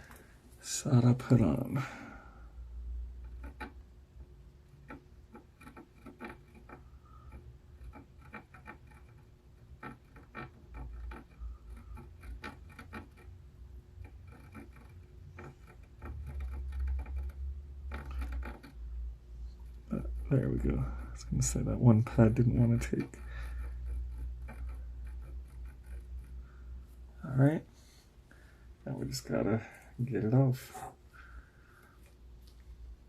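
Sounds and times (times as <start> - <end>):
faint hum: 13.3 - 33.0.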